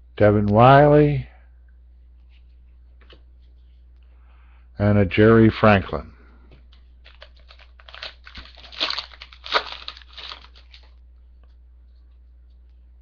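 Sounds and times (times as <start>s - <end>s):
low steady hum: 0.0s - 13.0s
foil wrapper crinkling and tearing: 7.0s - 11.0s.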